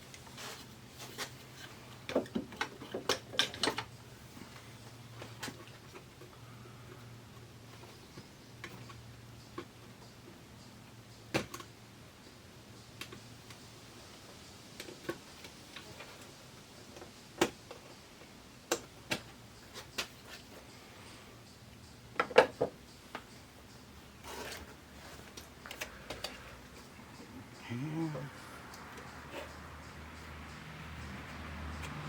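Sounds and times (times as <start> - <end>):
hand tools clicking and tapping: 16.9 - 20.8, 21.8 - 32.0.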